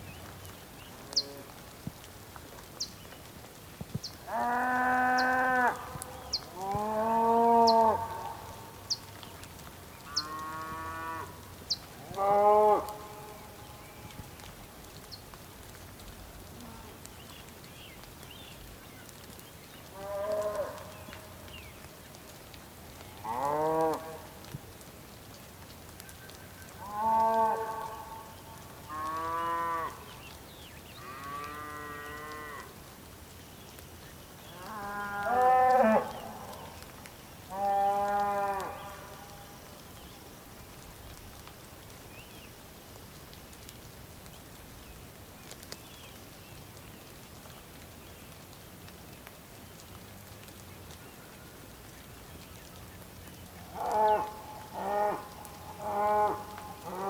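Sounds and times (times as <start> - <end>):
bulls bellowing: 53.8 - 57.0.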